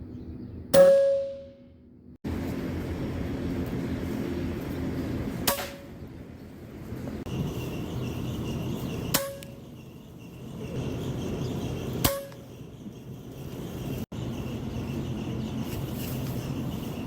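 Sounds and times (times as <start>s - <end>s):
metallic ring: 0.8s - 1.8s.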